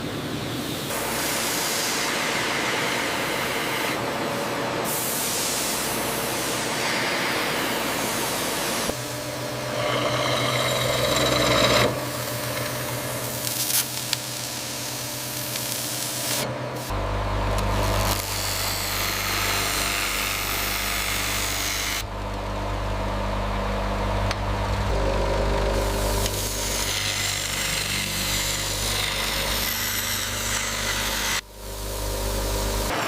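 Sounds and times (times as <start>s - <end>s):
machine hum: 6.8s - 15.8s, 16.4s - 33.0s
scraping and grinding: 9.5s - 13.9s.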